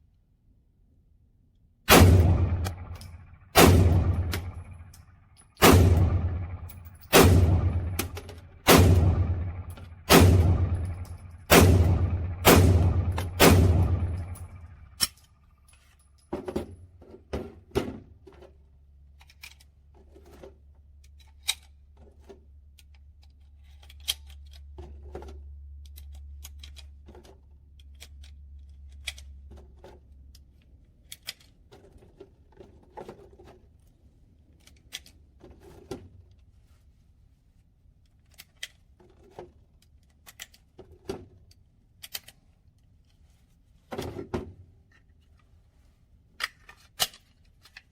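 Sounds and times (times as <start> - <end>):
pistol shots: 1.9 - 4.9, 5.6 - 14.8
low hum: 1.9 - 15.0
small clicks and knocks: 18.2 - 36.5, 38.0 - 45.5, 46.4 - 47.9.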